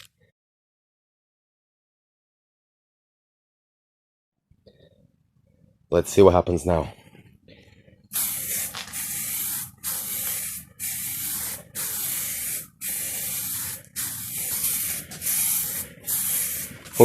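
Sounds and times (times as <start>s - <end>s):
aerosol can spraying: 8.1s - 17.0s.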